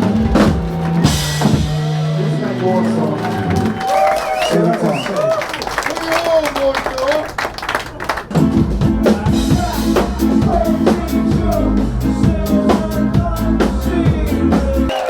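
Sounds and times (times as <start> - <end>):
drum kit beat: 0.0 - 4.0, 8.2 - 15.0
live band playing: 0.0 - 4.3, 8.3 - 15.0.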